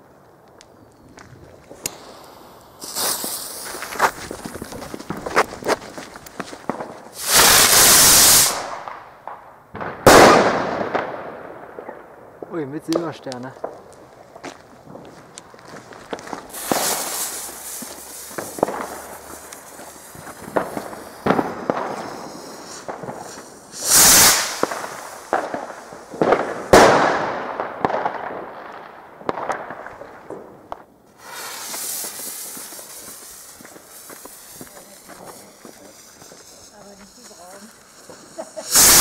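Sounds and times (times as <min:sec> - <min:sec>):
firework bangs and crackles: 0:00.0 - 0:39.0
loud firework blasts: 0:01.2 - 0:39.0
firework hissing rushes: 0:01.5 - 0:08.8, 0:16.4 - 0:27.2, 0:31.1 - 0:39.0.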